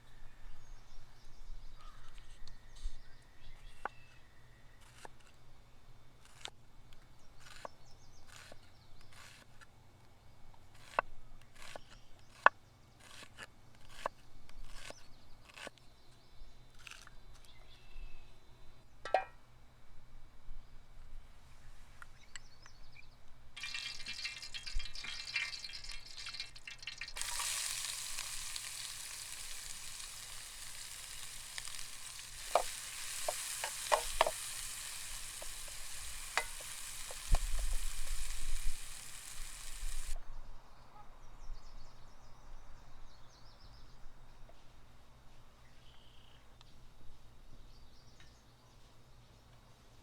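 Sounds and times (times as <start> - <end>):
utensil clinking against pan: 23.6 - 38.4
food sizzling in a hot pan: 23.6 - 40.2.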